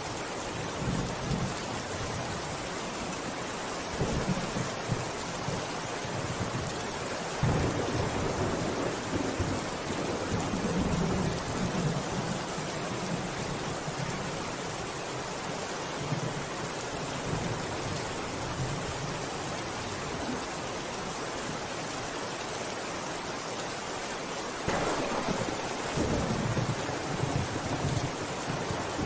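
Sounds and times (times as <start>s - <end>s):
steady rain falling: 0.0s - 29.0s
low rumble of thunder: 4.0s - 5.7s, 7.4s - 13.2s, 24.7s - 29.0s.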